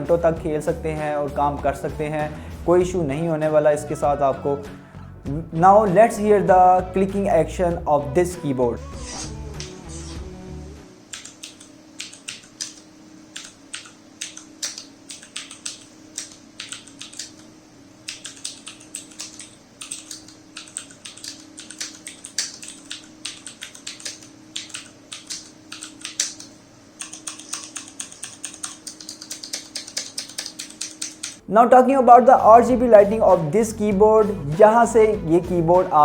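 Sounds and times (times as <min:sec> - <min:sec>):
clicky mechanical keyboard typing: 0:11.1 - 0:31.4.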